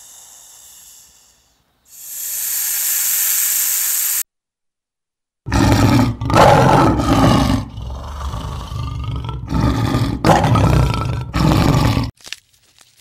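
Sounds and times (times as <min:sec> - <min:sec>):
large animal roaring: 0:05.5 - 0:12.1.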